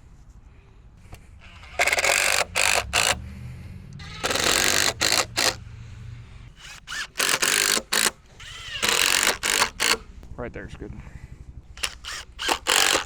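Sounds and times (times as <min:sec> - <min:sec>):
impact driver rattling bursts: 0:01.4 - 0:03.2, 0:04.0 - 0:05.6, 0:06.5 - 0:10.2, 0:11.6 - 0:13.0.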